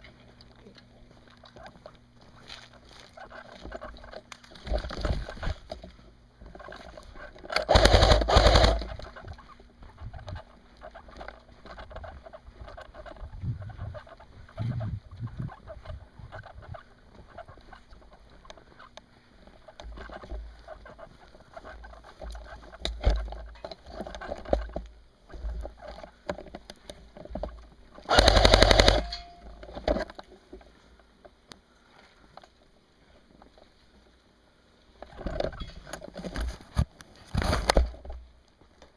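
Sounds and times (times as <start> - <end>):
rustling: 0.0 - 34.2, 34.9 - 38.9
airsoft rifle firing bursts: 7.5 - 9.1, 28.1 - 29.3.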